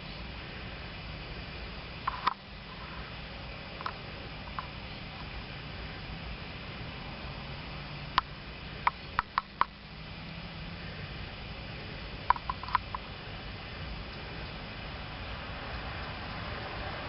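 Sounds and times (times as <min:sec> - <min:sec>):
steady low hum: 0:00.0 - 0:17.0
sharp ticks and taps: 0:02.0 - 0:02.4, 0:08.2 - 0:09.8, 0:12.2 - 0:13.1.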